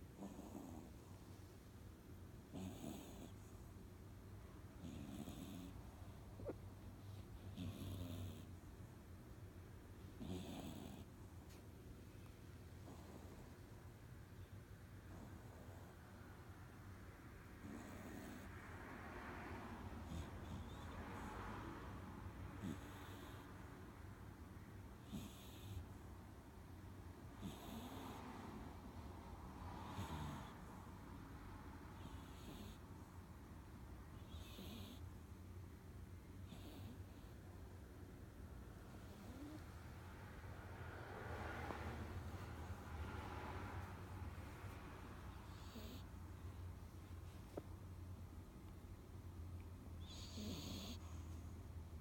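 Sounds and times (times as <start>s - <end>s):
puppy snoring: 0.0s - 1.4s, 2.4s - 3.8s, 4.7s - 8.9s, 10.0s - 11.6s, 12.7s - 13.8s, 14.9s - 16.4s, 17.4s - 23.8s, 25.0s - 26.1s, 27.2s - 33.2s, 34.1s - 35.2s, 36.4s - 37.4s, 38.8s - 46.6s, 50.0s - 52.0s.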